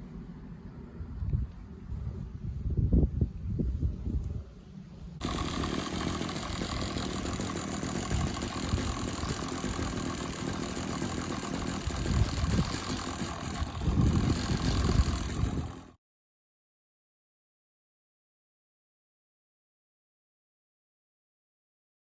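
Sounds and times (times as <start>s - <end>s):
engine running: 4.4s - 16.0s.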